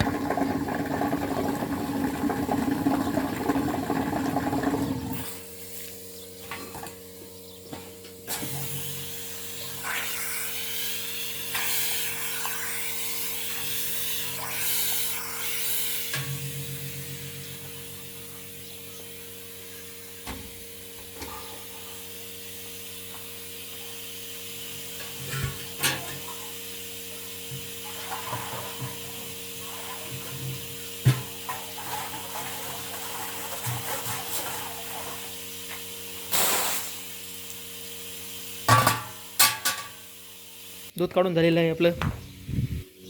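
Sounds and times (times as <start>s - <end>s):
milking machine vacuum humming: 0.0s - 5.5s, 8.3s - 36.4s
loud hiss: 8.3s - 20.5s, 36.1s - 40.9s.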